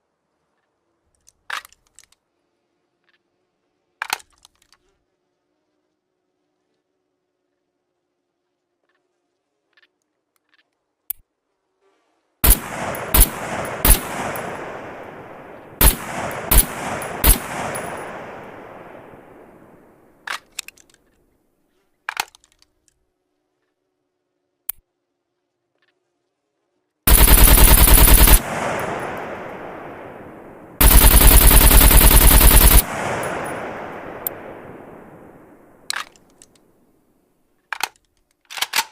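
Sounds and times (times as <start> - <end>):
automatic gunfire bursts: 12.4 - 20.4, 27.1 - 36.1
rifle single shots echoing: 12.4 - 20.5, 27.1 - 36.4.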